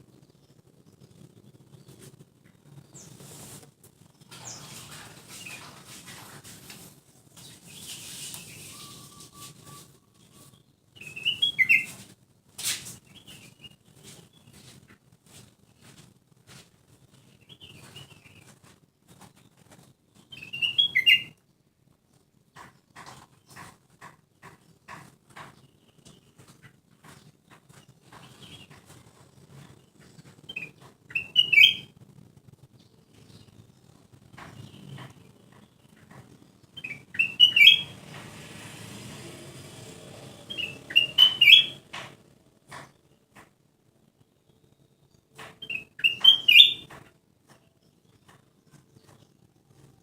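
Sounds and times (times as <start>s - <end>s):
bird chattering chirps: 36.8s - 37.9s, 40.5s - 41.8s, 45.6s - 46.9s.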